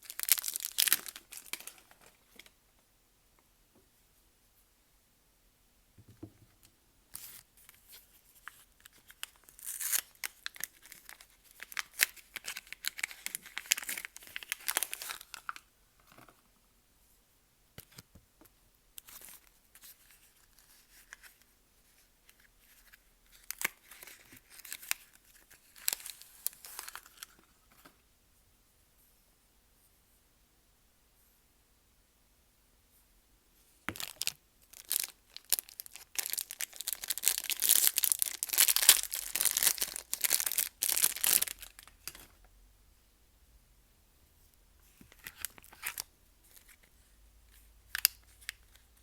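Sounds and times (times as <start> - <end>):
wrappers crackling: 0.0 - 2.1, 33.9 - 42.2.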